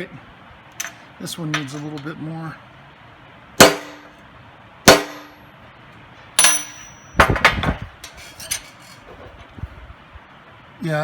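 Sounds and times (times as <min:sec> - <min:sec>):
hammer tapping metal: 0:04.9 - 0:05.4, 0:06.4 - 0:07.4.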